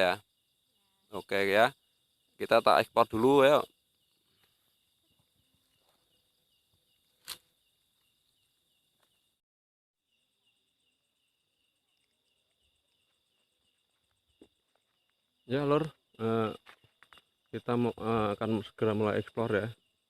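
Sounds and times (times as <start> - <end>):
faint crickets chirping: 0.0 - 9.4, 10.0 - 20.0
sharp click: 7.2 - 7.5.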